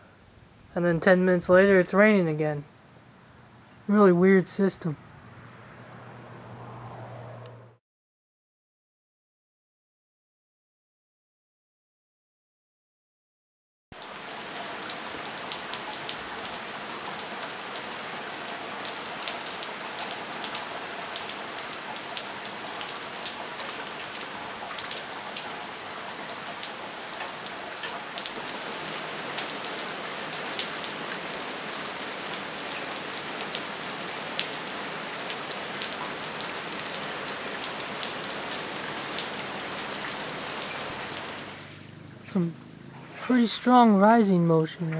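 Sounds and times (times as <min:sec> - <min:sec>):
heavy rain falling: 0:14.0 - 0:41.6.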